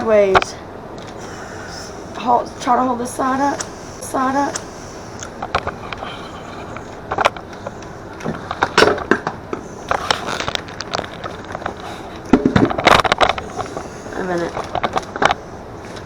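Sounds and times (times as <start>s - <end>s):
clicks and knocks: 5.2s - 16.0s
bag rustling and crinkling: 5.4s - 16.0s.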